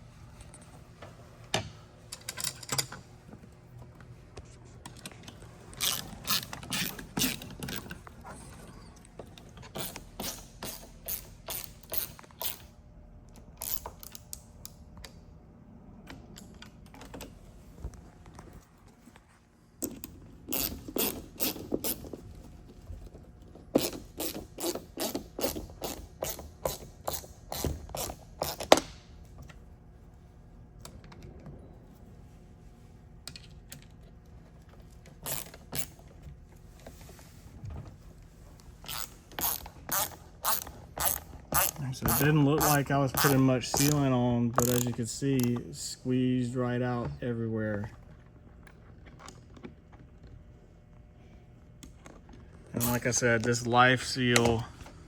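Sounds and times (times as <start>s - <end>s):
hand ratchet clicking: 13.6s - 14.3s, 23.8s - 28.9s, 35.2s - 35.9s, 38.9s - 45.0s.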